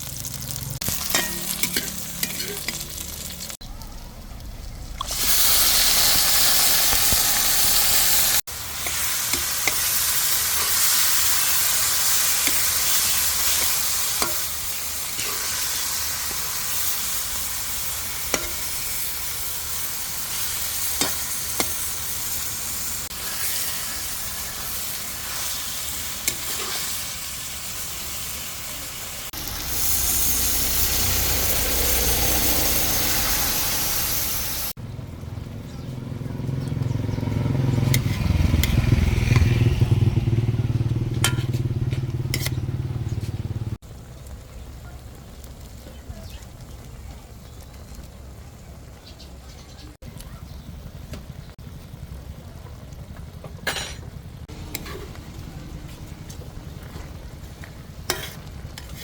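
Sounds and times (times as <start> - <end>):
food sizzling in frying pan: 0.0 - 3.6, 4.7 - 34.8.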